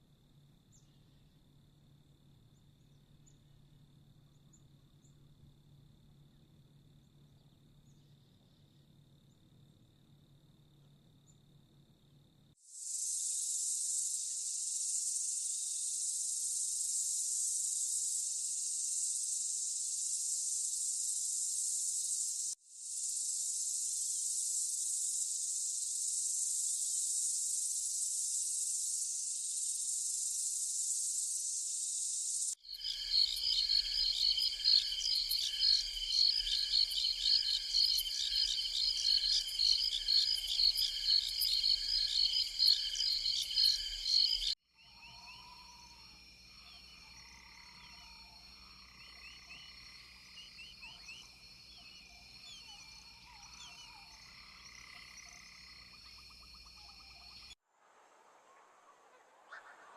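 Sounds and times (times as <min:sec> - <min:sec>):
high insect drone: 0:12.6 - 0:57.6
pulsing chorus of frogs and insects: 0:12.7 - 0:57.6.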